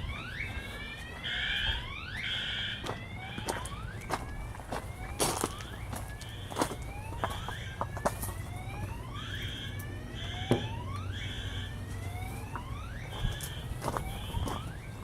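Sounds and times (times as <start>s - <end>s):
fire alarm whoop tones: 0.0s - 15.0s
footsteps clicking: 2.8s - 8.8s, 11.9s - 14.8s.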